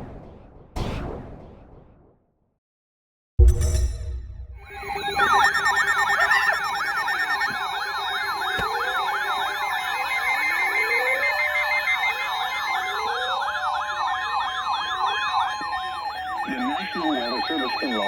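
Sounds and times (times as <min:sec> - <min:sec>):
electronic alert siren warbling: 0:04.6 - 0:18.0.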